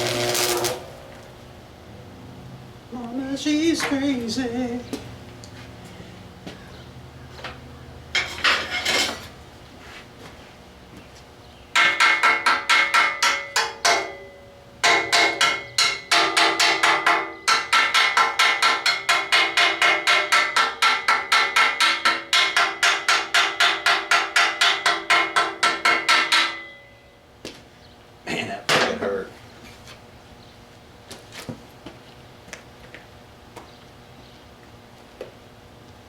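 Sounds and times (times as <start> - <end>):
hammer striking steel: 11.8 - 27.0.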